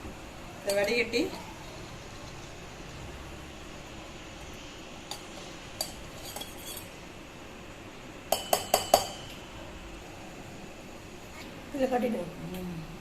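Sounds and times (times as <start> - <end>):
metal utensils clinking: 5.1 - 6.9.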